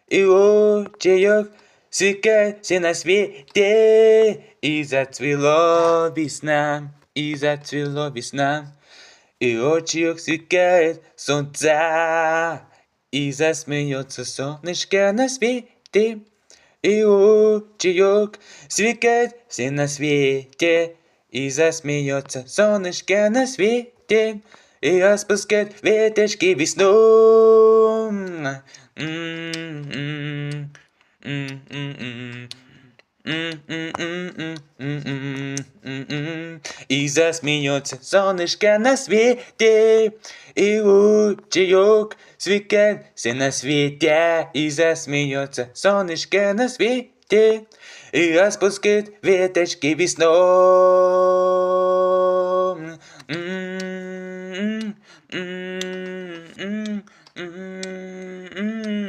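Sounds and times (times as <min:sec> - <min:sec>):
man singing: 0:00.0 - 0:59.0
faint ticks: 0:55.8 - 0:59.0.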